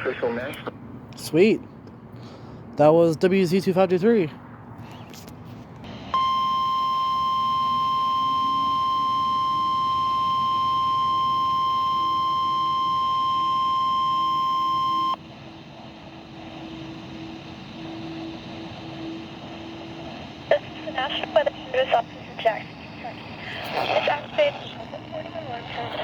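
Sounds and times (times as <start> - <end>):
radio hiss: 0.0 - 0.8, 5.9 - 26.0
steady alarm beep: 6.2 - 15.2.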